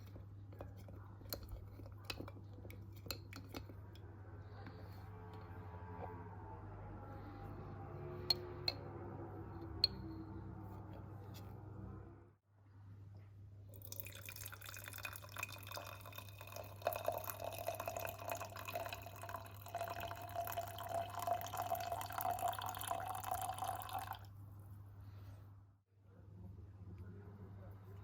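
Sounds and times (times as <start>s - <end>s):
liquid pouring into a cup: 13.7s - 24.3s.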